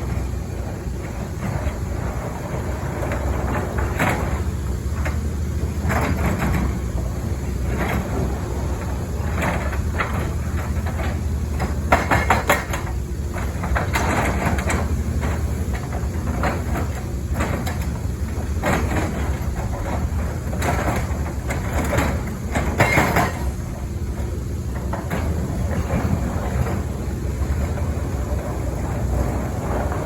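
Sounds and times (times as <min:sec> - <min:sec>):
excavator diesel engine running: 0:00.0 - 0:30.0
hydraulic breaker hammer clattering: 0:08.9 - 0:24.2.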